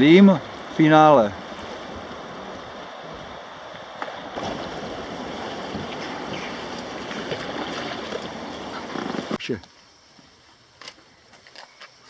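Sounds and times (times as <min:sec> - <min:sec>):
rushing river water: 0:00.0 - 0:09.4
wind buffeting microphone: 0:00.0 - 0:09.4.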